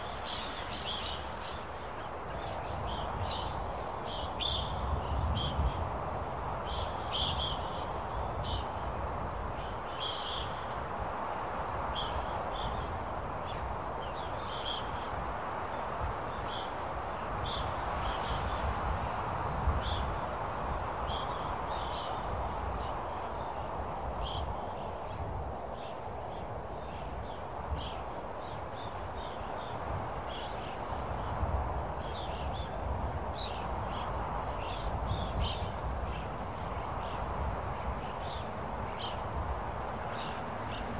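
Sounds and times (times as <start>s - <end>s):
steady wind rumble: 0.0s - 40.9s.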